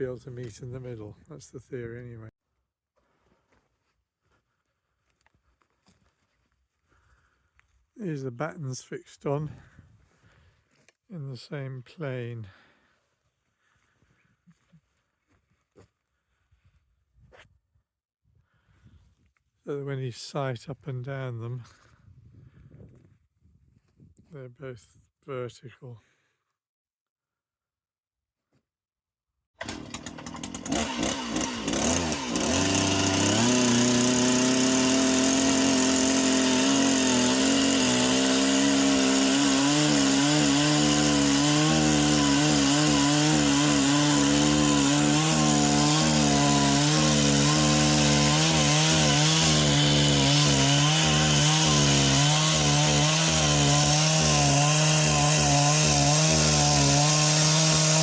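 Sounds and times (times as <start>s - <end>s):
chainsaw cutting wood: 29.6s - 58.0s.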